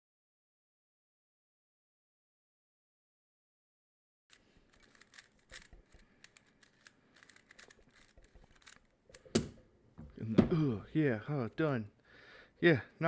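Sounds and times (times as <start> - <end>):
puzzle cube clicking: 4.3 - 9.6.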